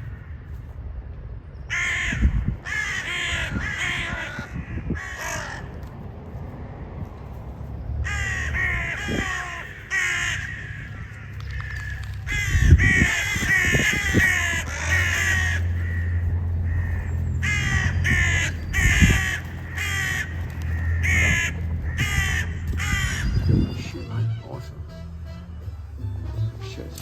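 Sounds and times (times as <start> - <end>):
crows cawing: 0.0 - 0.6, 1.7 - 5.9, 8.0 - 24.2
low steady rumble: 0.0 - 27.0.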